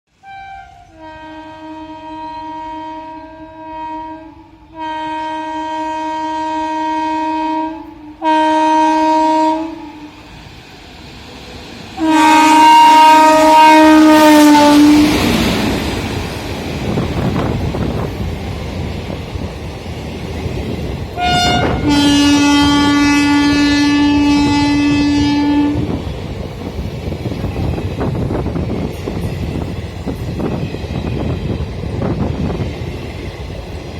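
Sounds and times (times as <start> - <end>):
locomotive horn blasts: 0.2 - 10.1, 12.0 - 15.6, 21.2 - 26.0
train rumbling and clattering: 7.9 - 33.9.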